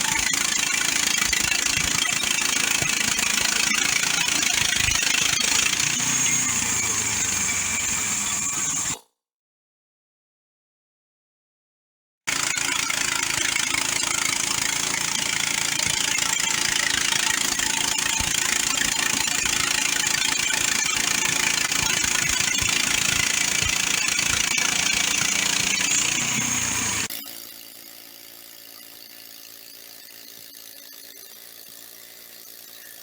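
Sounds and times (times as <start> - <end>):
sawmill engine droning: 5.3 - 9.0, 14.7 - 27.1.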